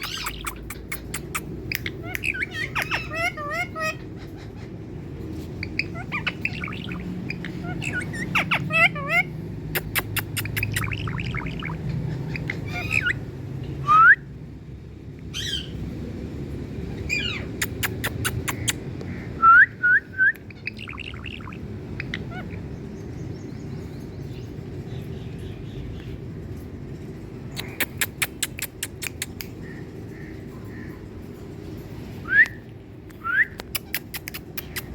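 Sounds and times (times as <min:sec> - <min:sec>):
parrot calling: 0:00.0 - 0:14.1, 0:17.0 - 0:19.5, 0:20.4 - 0:22.7
low background hum: 0:00.0 - 0:34.9.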